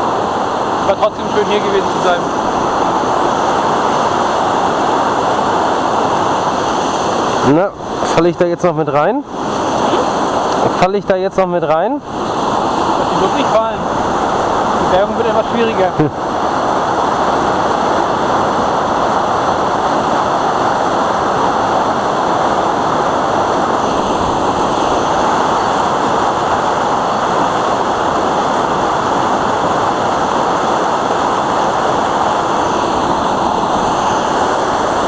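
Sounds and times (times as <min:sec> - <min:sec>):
waterfall rushing: 0:00.0 - 0:35.0.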